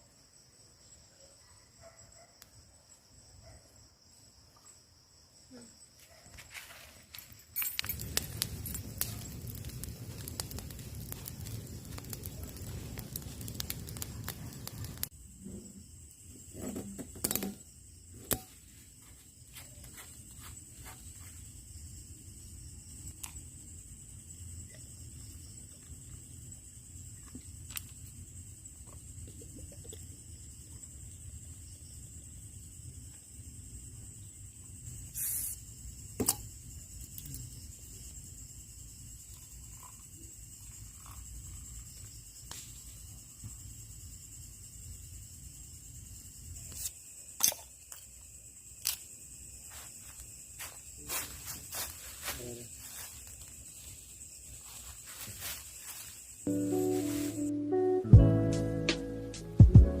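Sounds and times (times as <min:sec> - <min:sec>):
insects droning: 0:00.0 - 1:00.0
brief hiss: 0:35.2 - 0:35.6.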